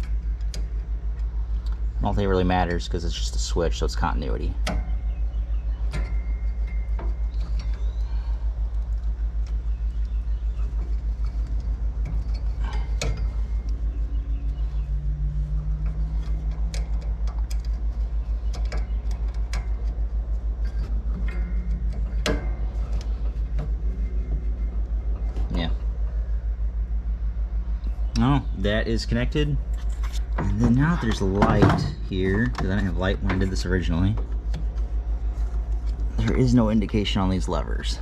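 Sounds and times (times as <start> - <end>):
clicks and knocks of parts handled: 0.0 - 1.8, 5.8 - 25.7, 29.6 - 36.5
steady low throb: 0.0 - 38.0.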